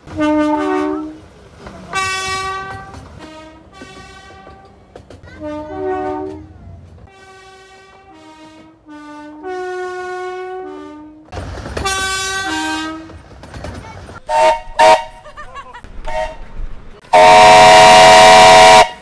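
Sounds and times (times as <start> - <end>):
two-tone train horn blasts: 0.0 - 1.2, 1.9 - 4.8, 5.4 - 6.4, 7.1 - 13.2, 14.3 - 15.1, 17.1 - 19.0
passing train rumble: 0.0 - 19.0.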